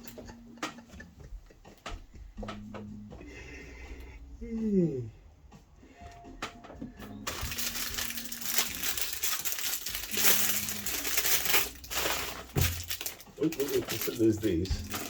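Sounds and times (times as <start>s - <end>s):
plastic packaging crinkling: 7.3s - 15.0s.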